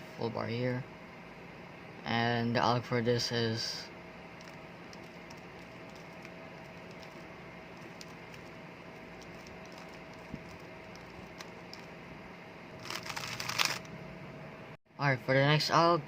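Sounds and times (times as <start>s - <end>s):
low hum: 3.7s - 14.8s.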